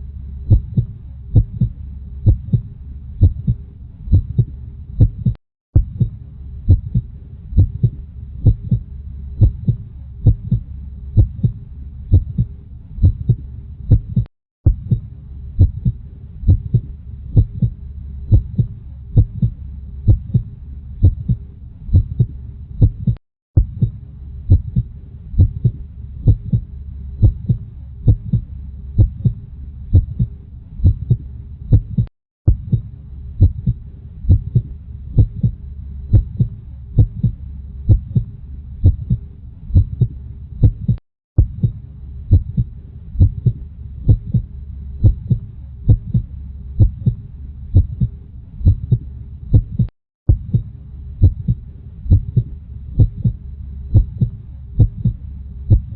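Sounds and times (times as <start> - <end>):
low rumble: 0.0 - 55.9
heartbeat thumping: 0.5 - 55.9.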